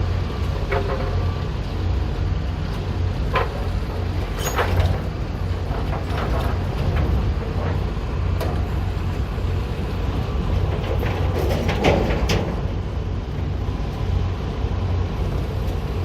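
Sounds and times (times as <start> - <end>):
machinery humming: 0.0 - 16.0
metallic clanks and knocks: 10.8 - 12.7.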